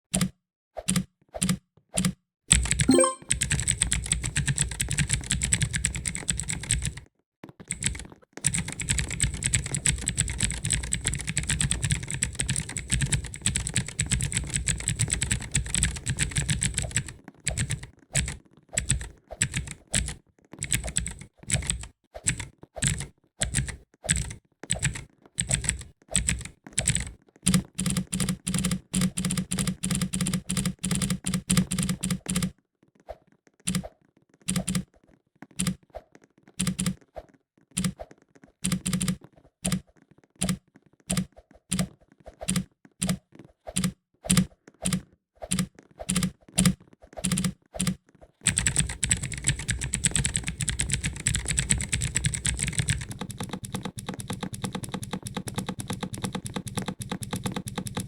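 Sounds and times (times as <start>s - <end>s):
mechanical keyboard keys clicking: 7.7s - 32.5s, 36.6s - 37.0s, 38.6s - 39.8s, 43.8s - 58.0s.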